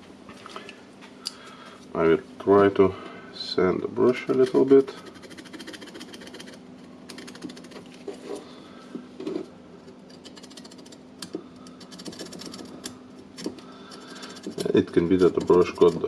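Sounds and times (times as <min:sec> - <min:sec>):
carbon brush rasping on sandpaper: 0:04.2 - 0:08.3, 0:14.0 - 0:16.0.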